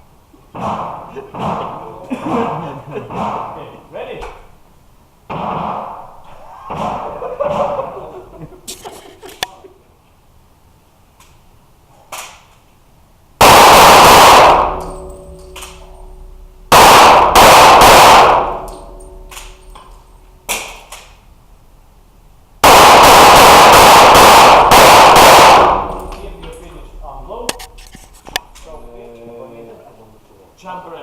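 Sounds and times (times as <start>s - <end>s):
pistol shots echoing indoors: 0.5s - 1.8s, 5.3s - 7.8s, 13.4s - 21.3s, 22.6s - 27.8s.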